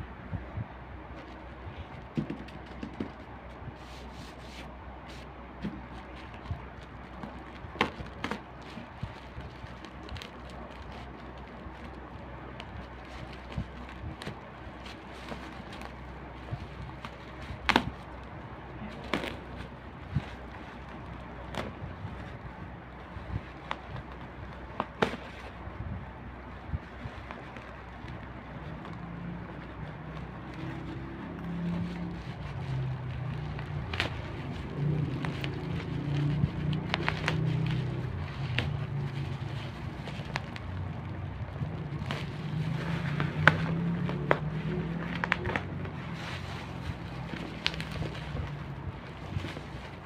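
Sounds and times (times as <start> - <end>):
low uneven hum: 0.0 - 50.0
packaging clicking and crackling: 27.0 - 50.0.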